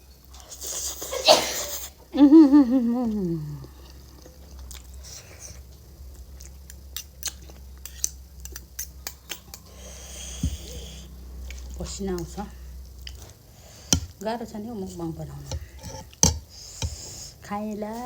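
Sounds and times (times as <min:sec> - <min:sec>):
person humming mmm: 0:02.8 - 0:03.8
person chewing noodles: 0:03.1 - 0:11.8.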